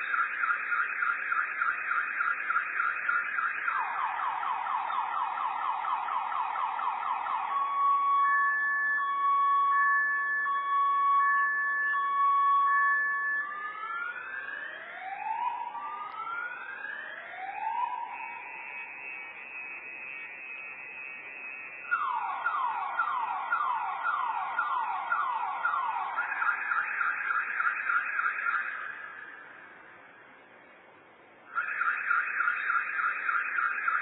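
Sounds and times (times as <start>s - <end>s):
distant car alarm: 0.0s - 14.7s, 17.5s - 29.7s, 31.5s - 34.0s.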